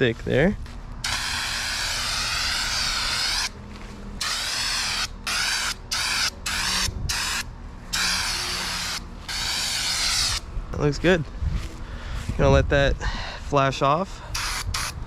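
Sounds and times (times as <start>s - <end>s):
aerosol can spraying: 1.0s - 3.5s, 8.0s - 10.4s, 14.4s - 15.0s.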